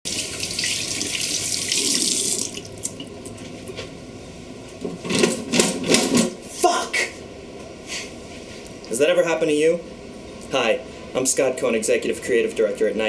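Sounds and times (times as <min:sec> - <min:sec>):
tap water running into sink: 0:00.1 - 0:03.0.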